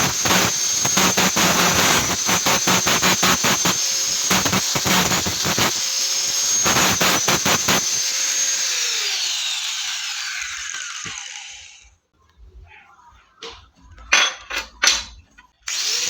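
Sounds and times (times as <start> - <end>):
angle grinder grinding metal: 0.0 - 11.9, 15.7 - 16.0.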